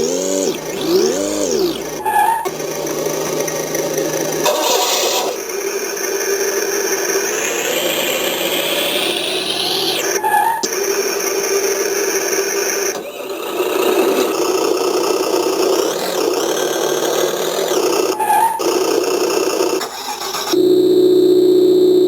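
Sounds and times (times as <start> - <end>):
steady electronic tone: 0.0 - 4.6
synthesized engine sound revving: 0.0 - 10.7.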